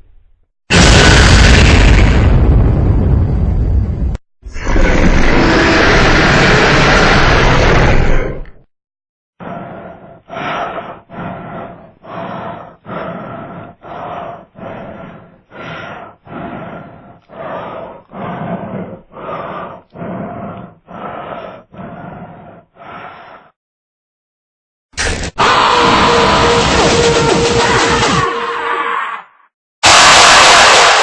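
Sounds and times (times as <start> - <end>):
rough growling sound effect: 4.5 - 8.6
loud noisy sound: 25.0 - 28.8, 29.8 - 31.0.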